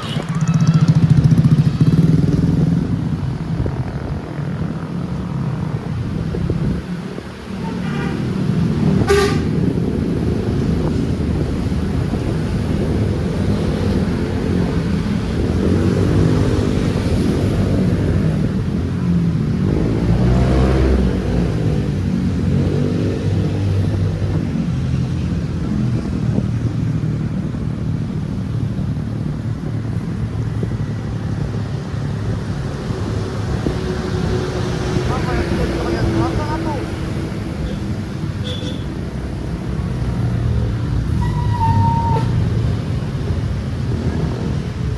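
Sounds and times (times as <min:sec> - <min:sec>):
engine and road rumble: 0:00.0 - 0:44.9
vehicle horn toots: 0:07.6 - 0:08.3, 0:09.0 - 0:09.6, 0:38.4 - 0:38.9.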